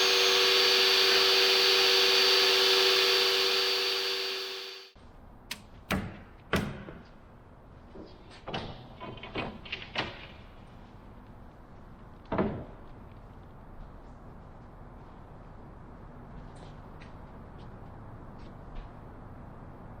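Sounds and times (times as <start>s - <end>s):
power saw running: 0.0s - 5.0s
wooden knocks and clunks: 5.5s - 7.2s, 12.2s - 12.9s.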